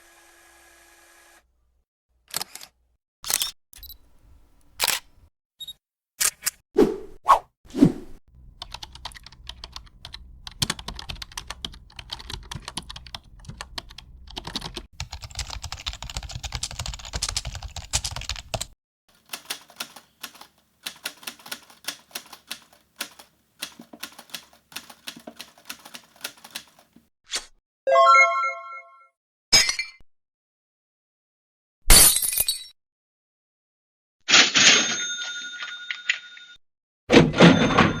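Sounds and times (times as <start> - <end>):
low hum: 8.3 - 14.9
keyboard typing clicks: 8.4 - 27.0.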